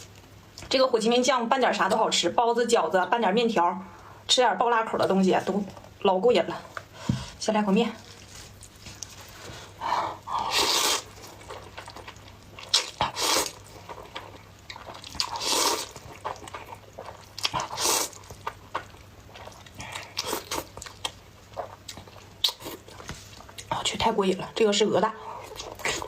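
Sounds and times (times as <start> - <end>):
noodle slurping: 10.3 - 11.9, 12.6 - 18.6
wet chewing and smacking: 10.7 - 23.8, 25.4 - 26.0.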